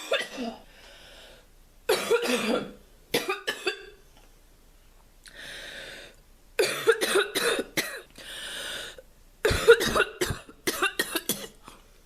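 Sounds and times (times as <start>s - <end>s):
girl barking cough: 0.0s - 0.6s, 1.9s - 3.9s, 6.6s - 8.1s, 9.4s - 11.6s
noisy breath drawn in: 0.7s - 1.5s, 5.3s - 6.2s, 8.2s - 9.0s.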